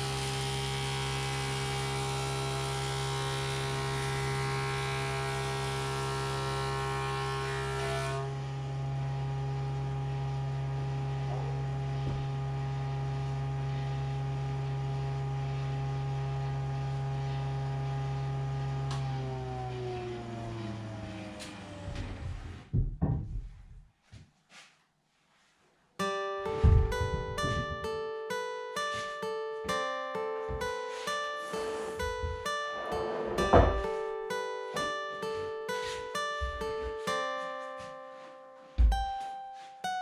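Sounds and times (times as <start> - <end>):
loud knocks: 22.7 - 23.6
hiss of cutting wood: 30.9 - 32.0.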